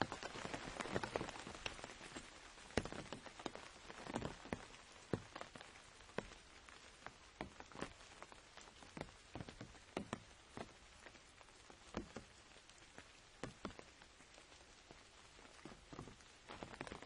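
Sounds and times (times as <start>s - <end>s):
rain hissing: 0.0s - 17.0s
raindrops tapping on umbrella: 0.0s - 17.0s.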